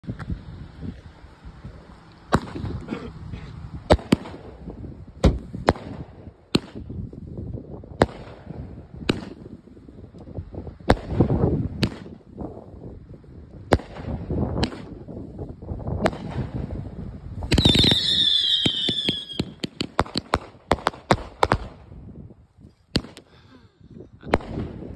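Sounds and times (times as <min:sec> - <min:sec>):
firework shots and bangs: 0:02.3 - 0:02.8, 0:03.8 - 0:07.1, 0:07.9 - 0:09.6, 0:10.8 - 0:12.3, 0:13.6 - 0:15.2, 0:15.9 - 0:22.0, 0:22.9 - 0:23.3, 0:24.2 - 0:24.9
falling firework whistles: 0:17.4 - 0:19.8.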